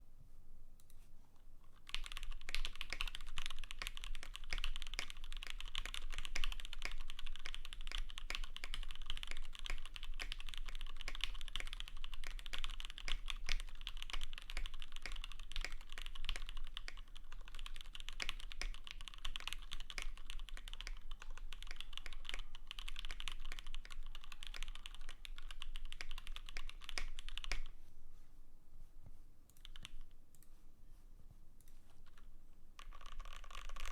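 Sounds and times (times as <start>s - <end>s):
fast typing on mechanical keyboard: 1.8s - 27.7s, 32.8s - 33.9s.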